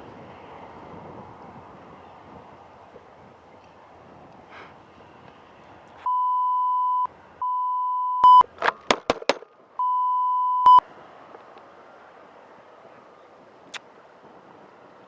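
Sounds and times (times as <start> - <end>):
faint outdoor noise: 0.0 - 15.0
censor bleep tone: 6.1 - 8.5, 9.8 - 10.8
loud sharp clicks: 8.5 - 9.5.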